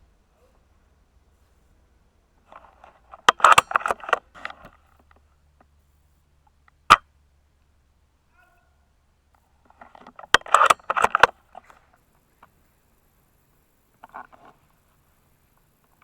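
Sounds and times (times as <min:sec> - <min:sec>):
rifle bolt clicks and clacks: 0:02.5 - 0:04.8, 0:09.8 - 0:11.4.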